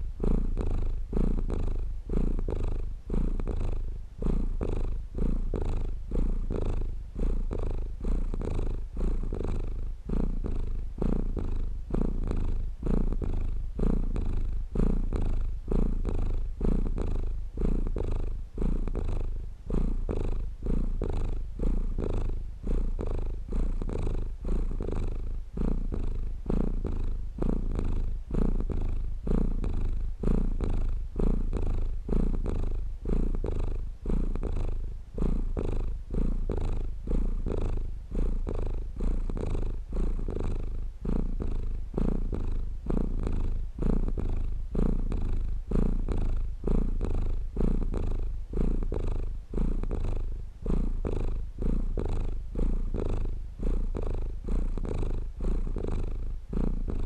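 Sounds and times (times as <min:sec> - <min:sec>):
cat purring: 0:00.0 - 0:57.0.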